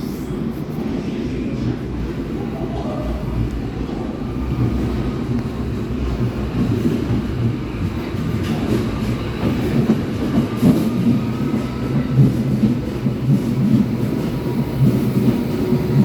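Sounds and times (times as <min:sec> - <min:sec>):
train rumble from inside: 0:00.0 - 0:16.0.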